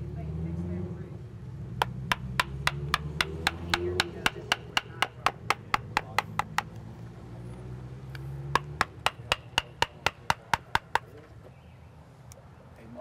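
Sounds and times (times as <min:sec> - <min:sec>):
rapid sharp taps on wood: 0:01.8 - 0:06.8, 0:08.5 - 0:11.1.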